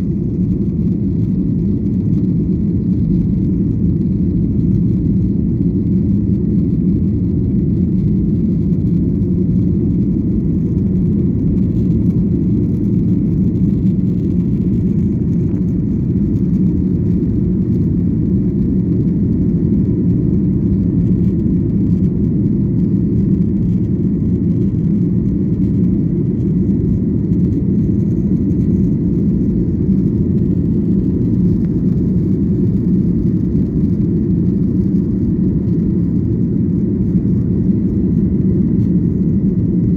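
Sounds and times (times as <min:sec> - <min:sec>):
jet engines and rushing air: 0:00.0 - 0:39.9.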